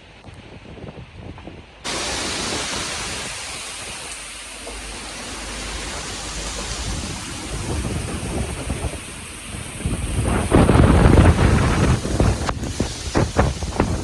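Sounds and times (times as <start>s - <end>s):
heavy rain and wind hiss: 0.0s - 14.0s.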